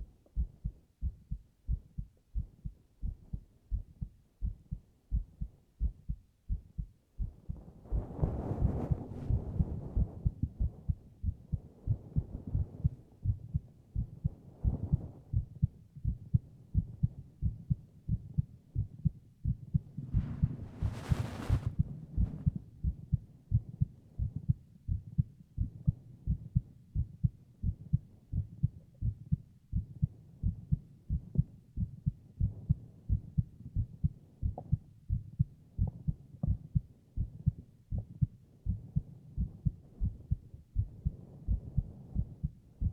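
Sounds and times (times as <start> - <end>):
heartbeat thumps: 0.0 - 42.9
soft hiss: 19.9 - 22.7.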